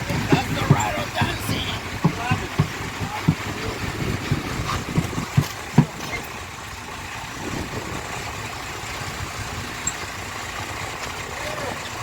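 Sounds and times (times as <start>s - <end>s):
low thumps: 0.0s - 6.3s
boat engine rumbling: 0.0s - 12.0s.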